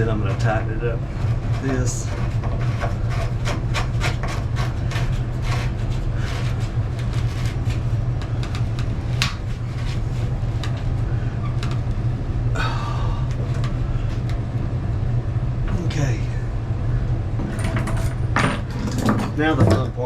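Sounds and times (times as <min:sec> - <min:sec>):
rough metal scrape: 0:00.0 - 0:08.0
steady low hum: 0:00.0 - 0:20.0.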